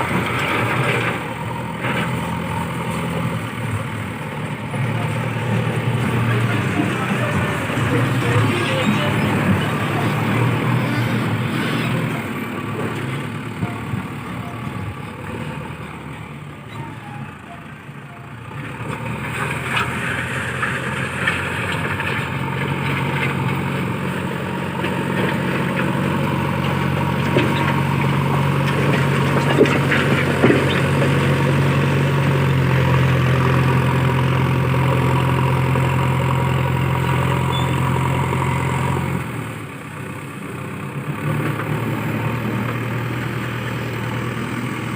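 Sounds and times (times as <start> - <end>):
diesel engine running: 0.0 - 44.9.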